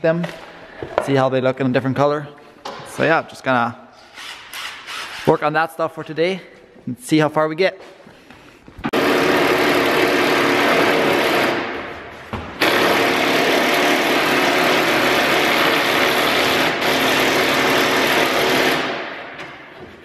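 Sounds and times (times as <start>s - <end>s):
handheld power tool running: 8.9s - 11.8s, 12.6s - 19.0s.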